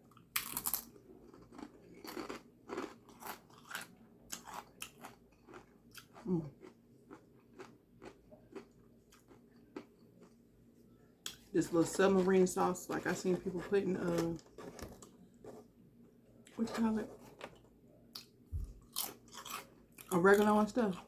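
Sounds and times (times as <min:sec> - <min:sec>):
chewing with crunches: 0:00.0 - 0:10.4, 0:17.4 - 0:21.0.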